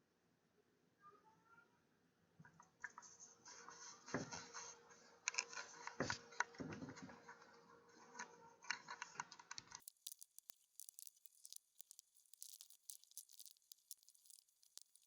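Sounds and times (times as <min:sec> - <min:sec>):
faint high ticking: 0:09.8 - 0:15.0.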